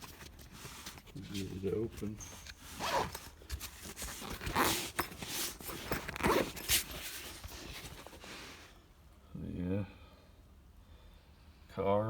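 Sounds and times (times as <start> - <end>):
zipper being pulled open: 0.0 - 8.6.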